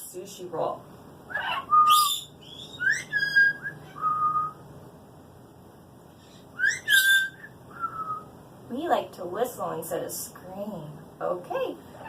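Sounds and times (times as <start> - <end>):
parrot raspy calls: 1.3 - 4.6, 6.2 - 8.3
parrot whistling: 1.3 - 4.6, 6.2 - 8.3.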